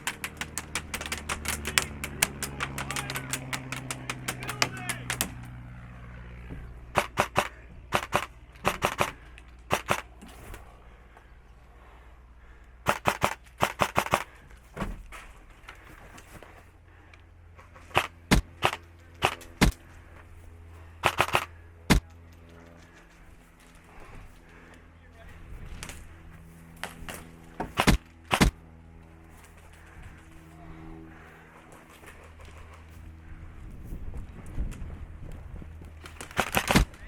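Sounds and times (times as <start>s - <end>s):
airsoft guns firing: 0.0s - 5.6s, 6.8s - 10.7s, 12.8s - 14.4s, 17.8s - 19.8s, 21.0s - 22.0s, 26.8s - 28.6s, 36.0s - 37.0s.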